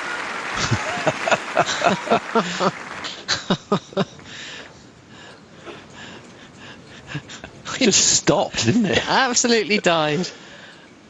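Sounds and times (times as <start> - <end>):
spectators laughing and exclaiming: 0.0 - 4.3
low crowd noise: 0.0 - 11.0.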